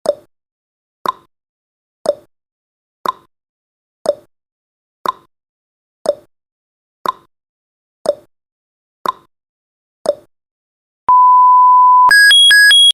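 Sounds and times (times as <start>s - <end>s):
steady electronic beep: 11.1s - 12.9s.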